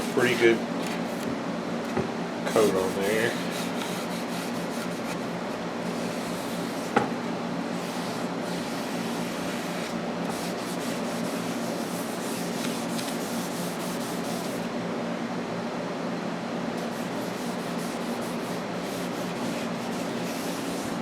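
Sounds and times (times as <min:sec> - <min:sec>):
cloth scrubbing wood: 0:02.5 - 0:07.1, 0:07.7 - 0:14.7, 0:16.8 - 0:21.0.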